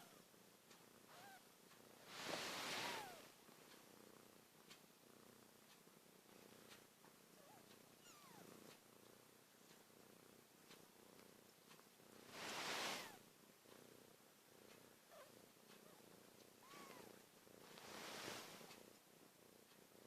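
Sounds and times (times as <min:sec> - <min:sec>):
cat purring: 0:00.0 - 0:20.0
kittens squeaking: 0:07.5 - 0:08.4, 0:16.6 - 0:17.1.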